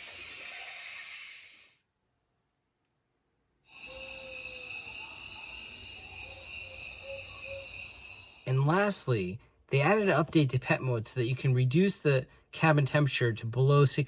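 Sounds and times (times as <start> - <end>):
ambient soundscape high tones: 3.7 - 8.6.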